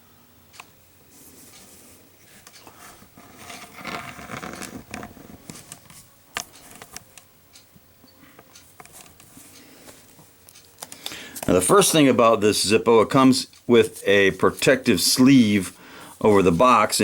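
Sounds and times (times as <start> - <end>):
cardboard box rustling and scraping: 3.0 - 5.7.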